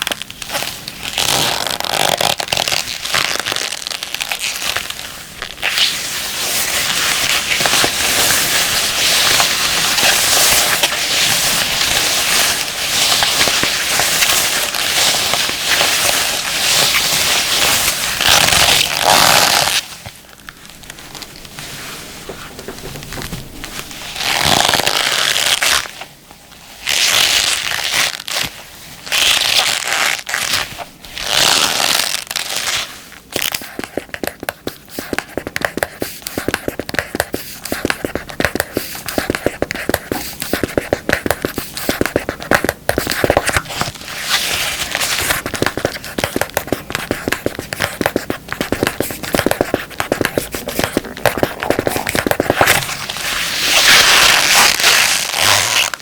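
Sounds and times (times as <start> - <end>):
gloves crinkling: 0.0 - 56.0
quick scratches and taps: 33.4 - 53.0.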